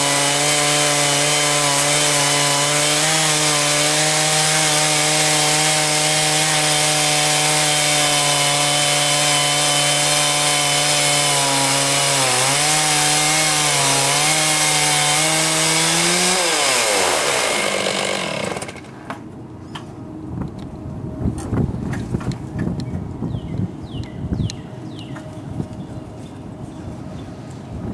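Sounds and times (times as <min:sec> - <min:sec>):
sawmill engine and saw running: 0:00.0 - 0:19.2.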